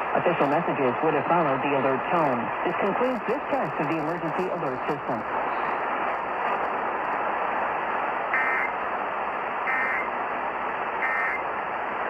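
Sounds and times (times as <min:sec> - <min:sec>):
radio hiss: 0:00.0 - 0:06.7, 0:08.3 - 0:08.8, 0:09.6 - 0:10.1, 0:11.0 - 0:11.5
buzzy two-tone digital squawk: 0:08.4 - 0:08.7, 0:09.7 - 0:10.1, 0:11.0 - 0:11.4.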